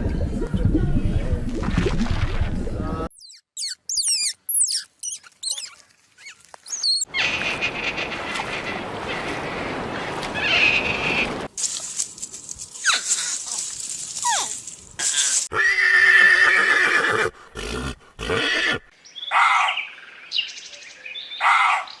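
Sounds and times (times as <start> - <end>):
horse neighing: 15.5 - 18.9.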